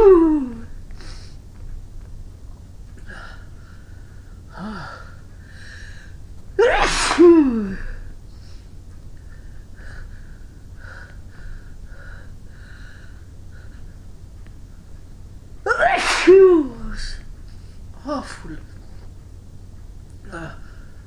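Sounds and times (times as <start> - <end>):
woman sneezing: 0.0 - 0.7, 6.6 - 8.0, 15.7 - 17.2.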